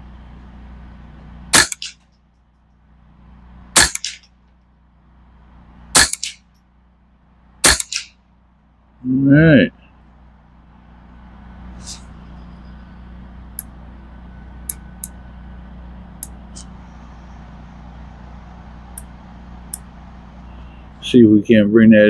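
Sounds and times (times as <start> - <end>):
steady low rumble: 0.0 - 22.0
rifle firing sharp cracks: 1.5 - 2.0, 3.8 - 4.3, 5.9 - 6.5, 7.6 - 8.2.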